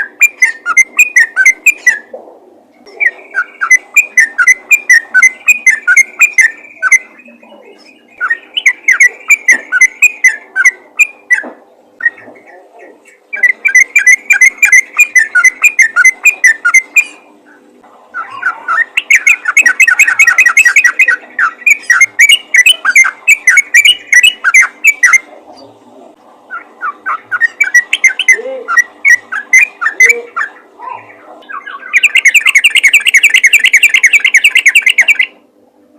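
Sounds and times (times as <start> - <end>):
bulbul singing chattering notes: 0.0 - 2.1, 2.9 - 17.3, 18.1 - 25.3, 26.5 - 30.7, 31.4 - 35.4.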